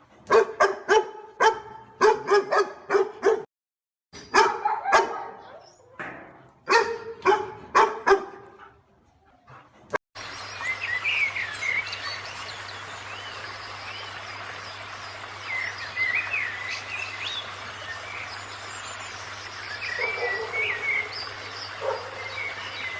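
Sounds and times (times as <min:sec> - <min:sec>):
dog barking: 0:00.3 - 0:03.5, 0:04.4 - 0:05.6, 0:06.7 - 0:08.7, 0:20.0 - 0:21.0, 0:21.8 - 0:22.5
small birds chirping: 0:10.2 - 0:22.9.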